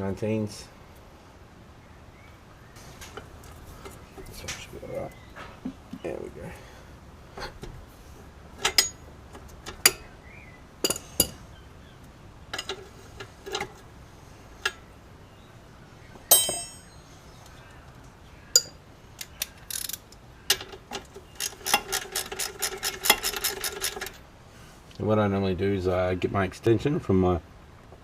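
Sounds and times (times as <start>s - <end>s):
metal hand tools clinking: 8.6s - 9.0s, 10.8s - 11.4s, 16.3s - 16.9s, 18.6s - 18.8s.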